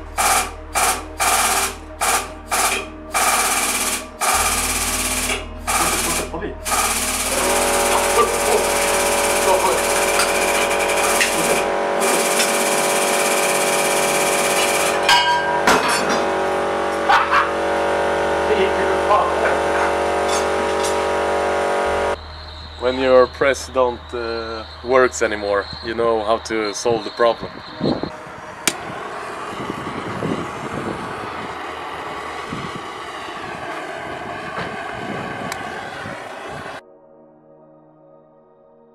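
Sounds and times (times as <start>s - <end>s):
gas torch roaring: 0.0s - 22.2s, 22.8s - 36.8s
hydraulic press pump running: 0.0s - 22.2s, 28.4s - 36.8s.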